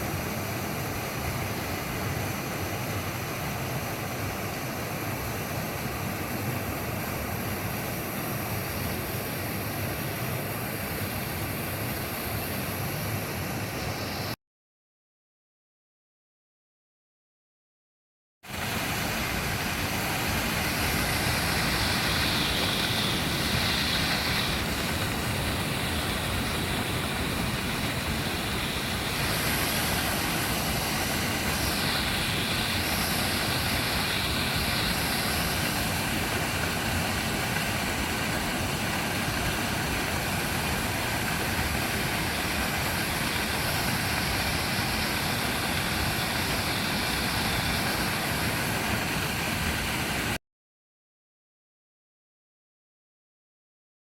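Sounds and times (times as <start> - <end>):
waterfall rushing: 18.5 - 50.4.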